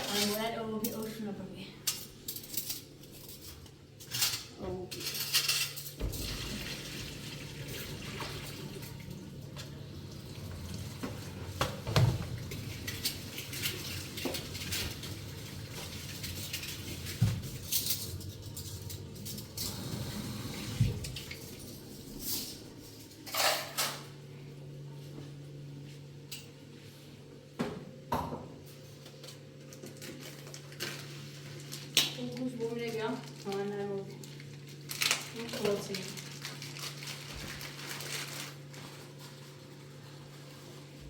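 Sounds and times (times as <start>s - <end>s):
low steady hum: 0.0s - 41.0s
water running: 6.0s - 23.2s
dishes clinking and knocking: 11.0s - 19.9s.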